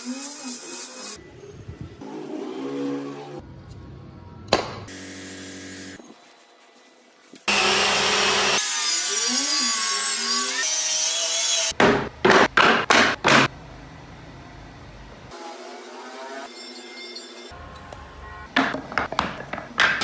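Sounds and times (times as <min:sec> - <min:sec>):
power tool cutting wood: 0:07.5 - 0:11.7, 0:15.3 - 0:17.5.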